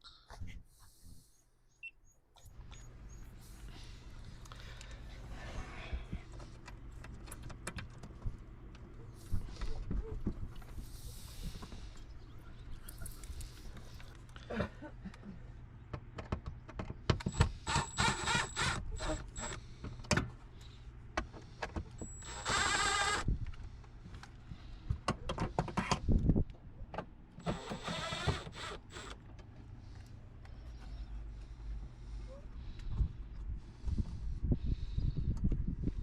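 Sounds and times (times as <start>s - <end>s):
small electric motor whirring: 17.3s - 19.6s, 22.0s - 23.3s, 27.4s - 29.2s.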